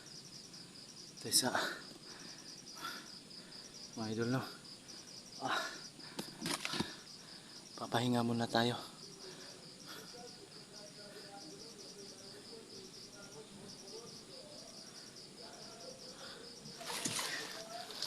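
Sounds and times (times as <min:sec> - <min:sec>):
crickets chirping: 0:00.0 - 0:18.0
rustle of movement: 0:16.8 - 0:18.0.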